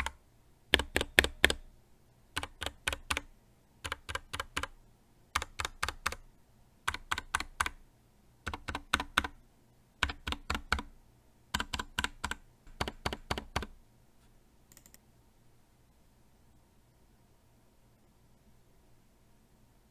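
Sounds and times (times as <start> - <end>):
mechanical keyboard typing: 0.0 - 1.7, 2.4 - 4.8, 5.4 - 6.3, 6.9 - 7.8, 8.5 - 9.4, 10.0 - 10.9, 11.5 - 13.8, 14.7 - 15.0.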